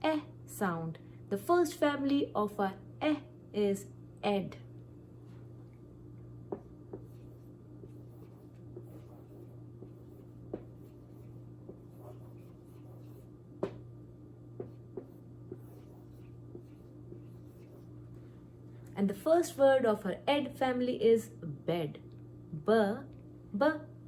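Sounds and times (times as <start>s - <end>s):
steady low hum: 0.0s - 24.0s
pen scratching and tapping: 6.5s - 13.8s, 14.6s - 17.8s.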